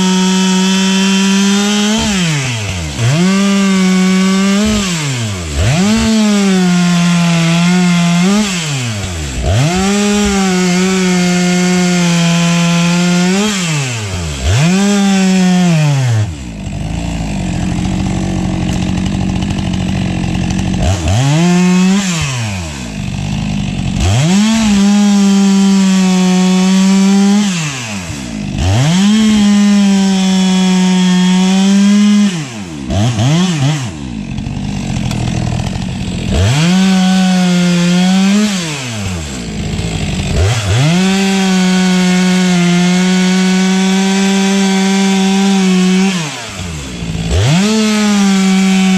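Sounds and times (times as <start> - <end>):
chainsaw revving: 0.0 - 48.9.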